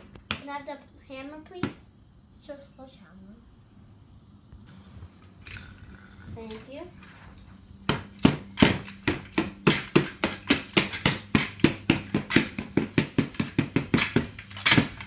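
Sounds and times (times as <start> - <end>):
rapid small hammer blows: 7.8 - 15.0.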